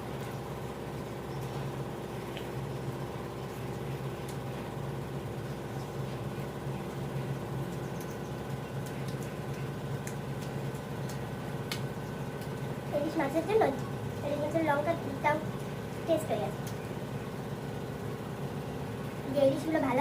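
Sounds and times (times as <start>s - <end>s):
steady mechanical hum: 0.0s - 20.0s
faint eating clicks: 1.3s - 4.8s, 5.4s - 17.0s.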